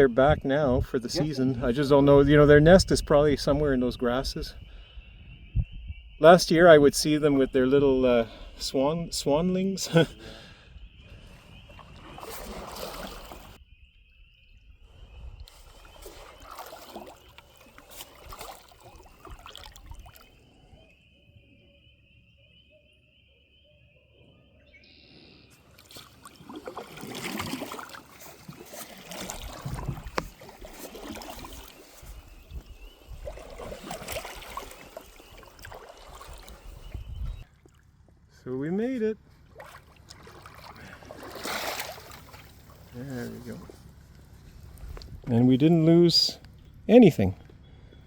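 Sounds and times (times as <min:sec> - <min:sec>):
paddles splashing in water: 0:11.2 - 0:13.6, 0:15.5 - 0:20.5, 0:25.6 - 0:38.0, 0:39.3 - 0:45.2.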